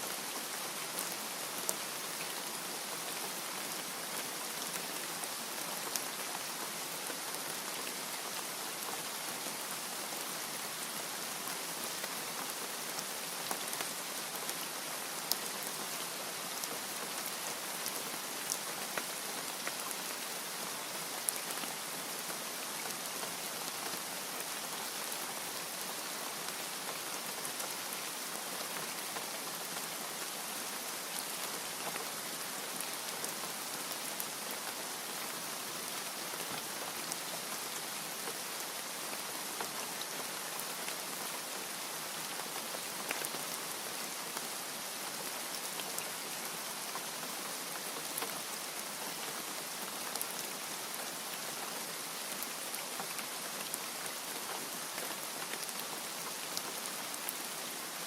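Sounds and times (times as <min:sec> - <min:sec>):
steady rainfall: 0:00.0 - 0:58.0.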